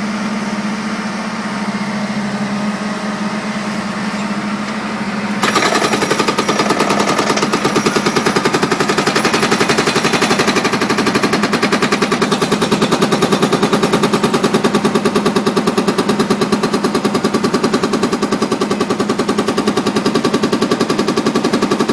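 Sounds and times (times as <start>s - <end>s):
digger engine hum: 0.0s - 21.9s
hydraulic concrete breaker hammering: 5.3s - 21.9s.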